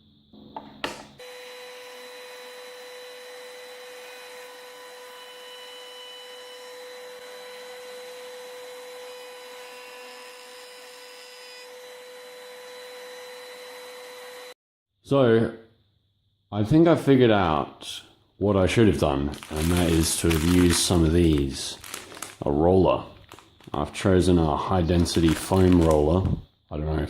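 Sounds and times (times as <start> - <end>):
small power tool motor whining: 1.2 - 14.6.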